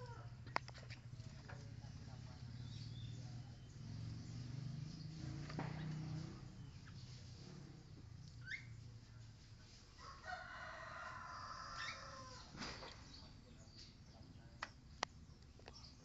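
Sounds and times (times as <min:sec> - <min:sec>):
rising bird chirp: 0:08.2 - 0:08.9
rooster crowing: 0:10.0 - 0:12.5.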